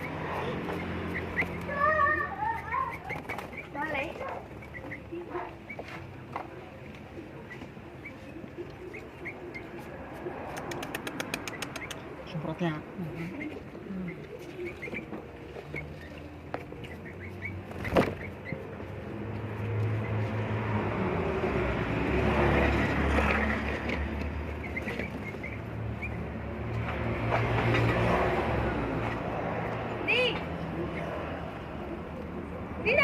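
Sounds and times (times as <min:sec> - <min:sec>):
vehicle rumbling past: 0:00.0 - 0:33.0
sharp click: 0:10.6 - 0:12.0.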